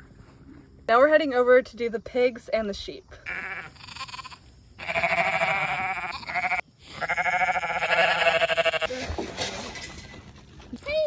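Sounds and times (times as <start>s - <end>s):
sheep bleating: 3.2s - 8.9s.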